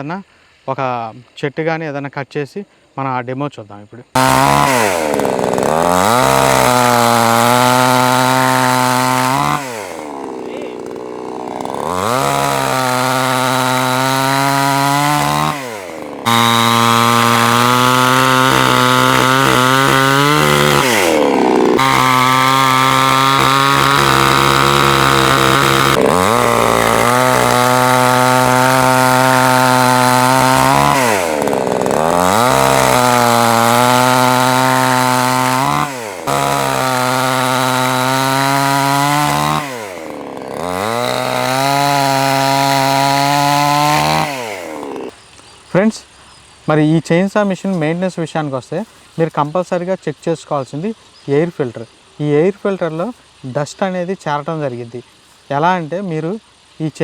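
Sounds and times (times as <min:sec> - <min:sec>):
chainsaw cutting wood: 0:04.1 - 0:45.5.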